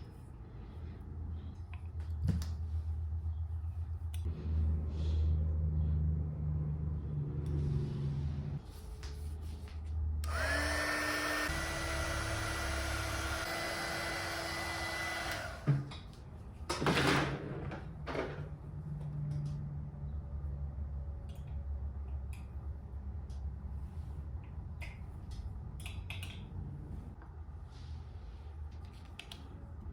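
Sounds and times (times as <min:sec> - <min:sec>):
small electric motor whining: 0:10.2 - 0:15.8.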